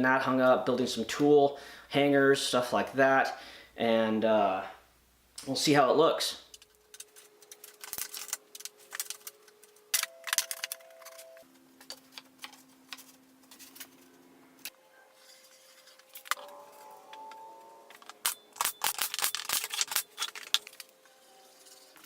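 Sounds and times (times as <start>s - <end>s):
quiet background music: 6.9s - 22.0s.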